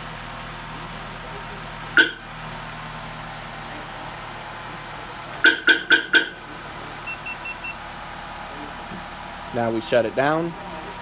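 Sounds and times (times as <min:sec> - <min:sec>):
car engine idling: 0:00.0 - 0:11.0
loud sharp car alarm chirps: 0:02.0 - 0:02.3, 0:05.4 - 0:06.4, 0:07.0 - 0:07.8.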